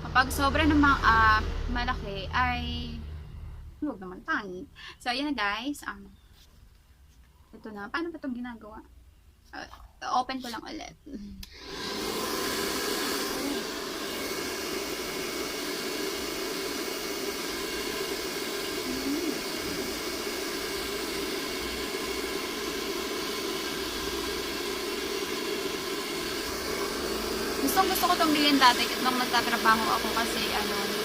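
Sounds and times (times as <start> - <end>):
hair dryer running: 11.4 - 31.0.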